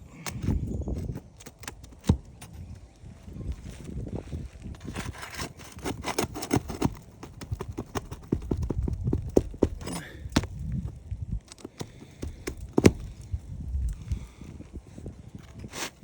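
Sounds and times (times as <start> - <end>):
pry tool pulling nails: 0.2 - 2.6, 4.8 - 13.3.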